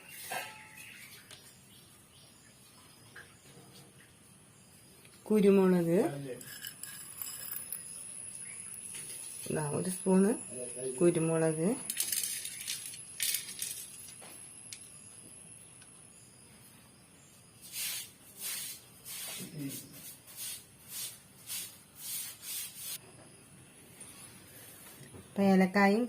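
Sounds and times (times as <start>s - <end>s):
spoon scraping spices in bowl: 6.4s - 10.0s.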